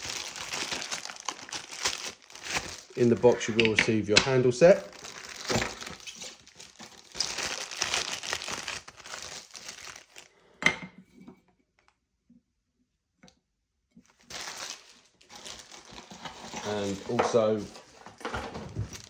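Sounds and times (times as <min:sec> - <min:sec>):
plastic bags crinkling: 0:00.0 - 0:10.3, 0:14.1 - 0:19.0.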